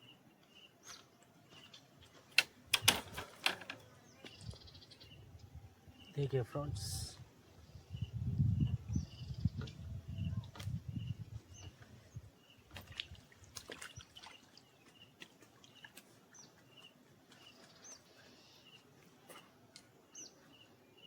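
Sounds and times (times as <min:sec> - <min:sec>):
small birds chirping: 0:00.0 - 0:02.6, 0:03.4 - 0:21.0
wind rumble on microphone: 0:04.4 - 0:13.2.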